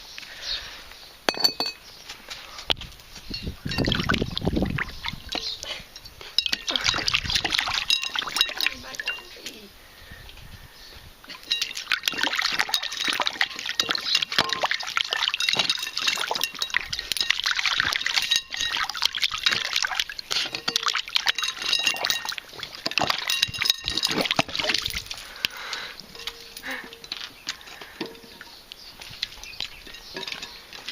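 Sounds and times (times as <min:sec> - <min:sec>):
puppy splashing water: 0:03.7 - 0:09.6, 0:11.2 - 0:28.2.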